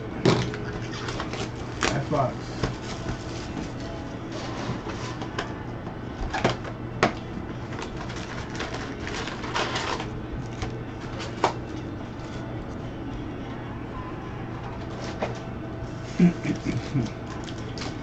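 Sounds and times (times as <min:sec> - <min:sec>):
steady low hum: 0:00.0 - 0:18.0
cardboard or wrapper rustling: 0:07.6 - 0:12.5.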